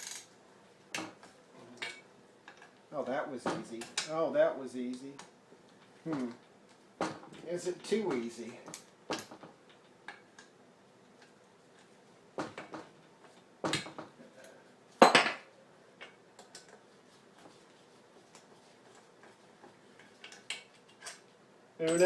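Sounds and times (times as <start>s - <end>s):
metal tools clinking on table: 0.0s - 0.3s, 21.8s - 22.0s.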